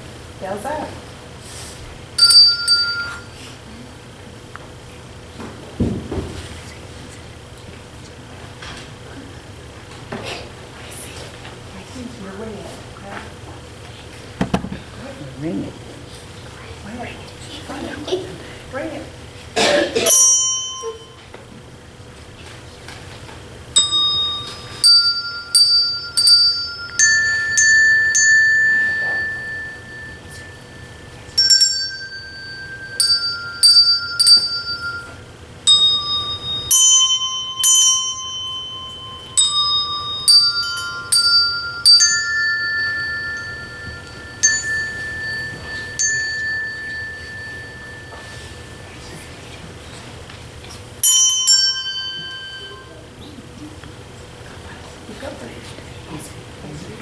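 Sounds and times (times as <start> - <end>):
handbells ringing a slow tune: 2.2 - 3.9, 20.0 - 21.5, 23.7 - 50.1, 51.0 - 53.4.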